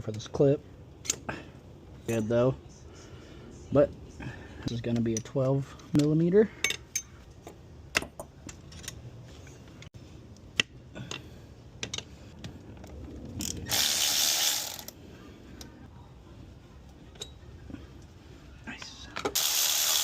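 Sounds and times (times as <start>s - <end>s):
hand ratchet clicking: 13.4s - 14.9s.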